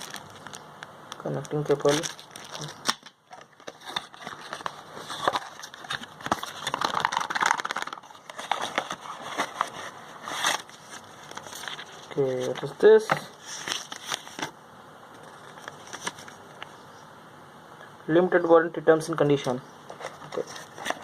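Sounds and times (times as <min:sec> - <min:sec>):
plastic packaging crinkling: 0:00.0 - 0:12.8, 0:13.4 - 0:14.5.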